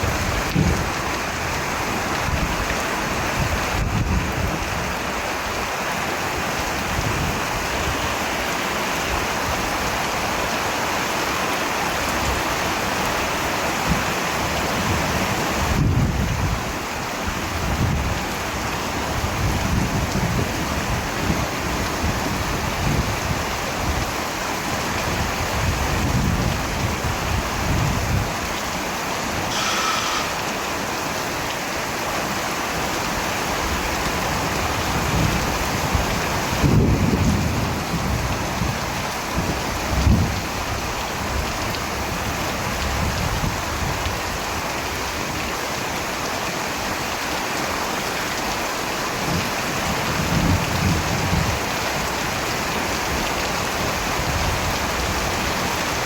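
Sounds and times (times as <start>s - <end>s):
steady rain: 0.0s - 56.0s.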